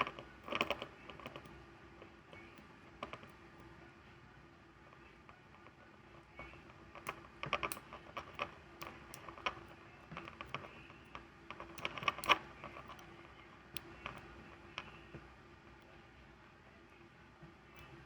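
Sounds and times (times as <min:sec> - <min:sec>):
lock pick clicking in padlock: 0:11.8 - 0:13.1.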